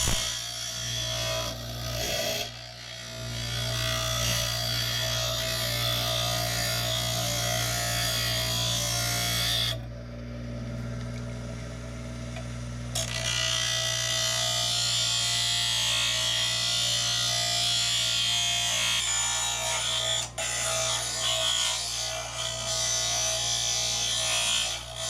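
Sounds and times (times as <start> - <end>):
cutoff wheel grinding steel: 0.0 - 9.8
power tool motor hum: 0.0 - 9.8.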